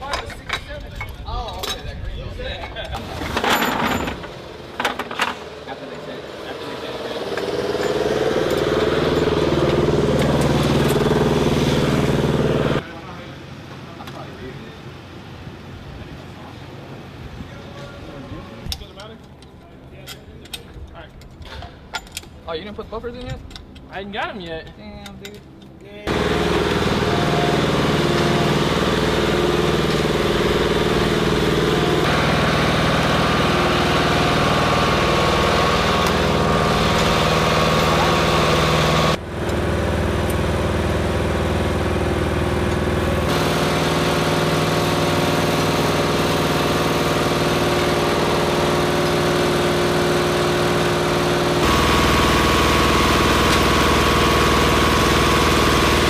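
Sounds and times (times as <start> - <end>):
engine running: 3.0 - 17.3, 26.0 - 56.0.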